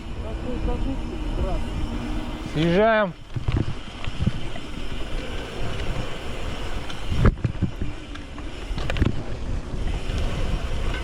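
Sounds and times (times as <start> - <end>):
bike rolling on dirt trail: 0.0 - 11.0
wind buffeting microphone: 0.0 - 11.0
bike knocking and clattering: 3.2 - 11.0.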